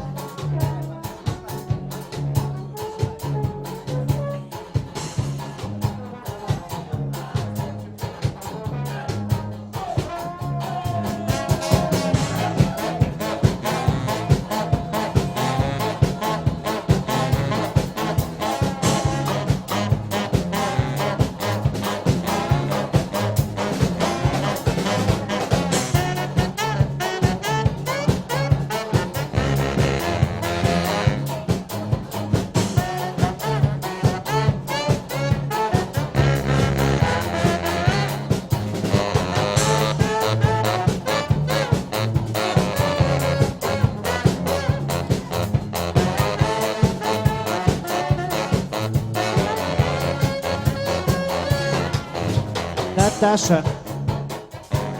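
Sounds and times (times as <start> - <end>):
brass band playing swing tune: 0.0 - 54.9.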